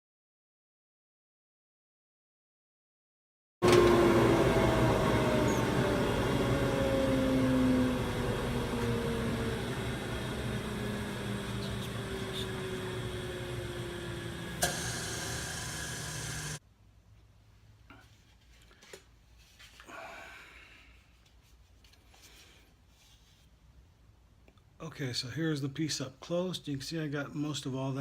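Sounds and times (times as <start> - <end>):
disc sander motor winding down: 3.6 - 16.6.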